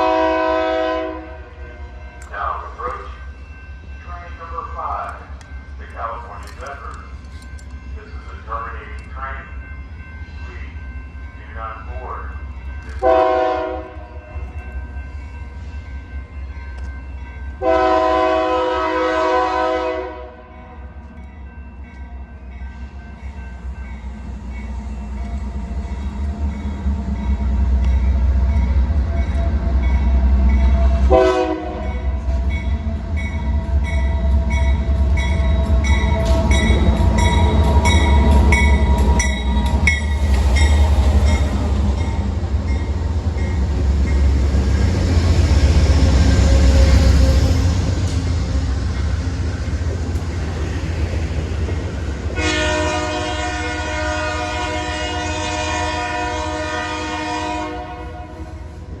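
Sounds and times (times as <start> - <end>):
locomotive horn blasts: 0.0 - 1.6, 13.0 - 14.0, 17.6 - 20.5, 31.0 - 32.0, 52.4 - 58.5
train passing with loud rumble: 0.0 - 59.0.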